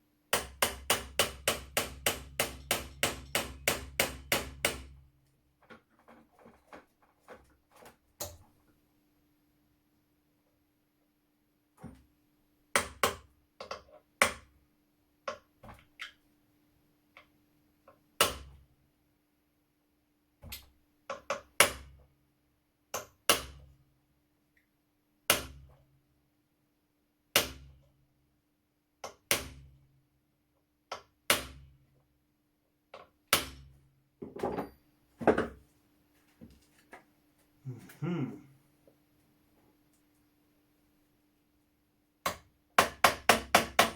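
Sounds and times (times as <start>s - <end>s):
hammer tapping a metal punch: 0.4s - 4.9s, 42.2s - 43.9s.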